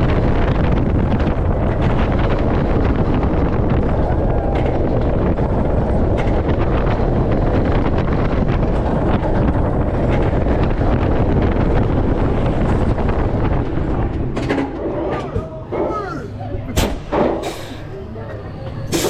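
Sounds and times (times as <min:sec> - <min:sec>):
roller coaster train rumbling: 0:00.0 - 0:19.0
wind buffeting microphone: 0:00.0 - 0:19.0.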